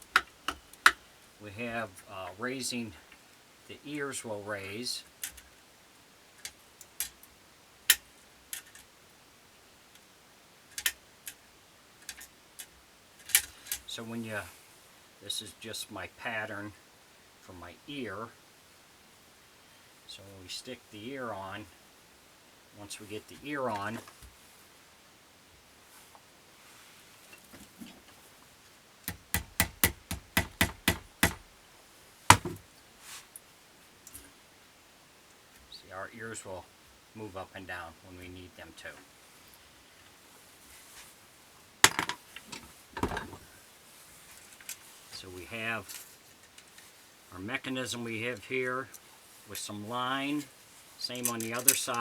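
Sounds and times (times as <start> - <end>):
wooden clicks and taps: 0.0 - 1.0
sharp knocks on wood: 29.1 - 31.4, 32.3 - 32.6.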